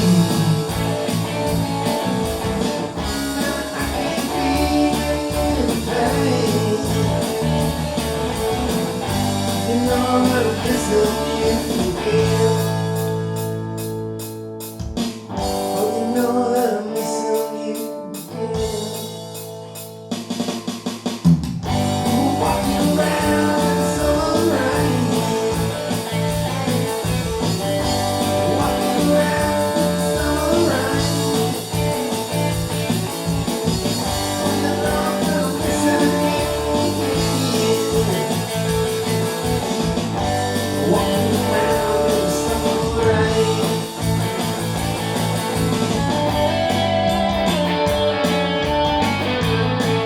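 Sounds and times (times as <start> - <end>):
guitar-led rock music: 0.0 - 50.0.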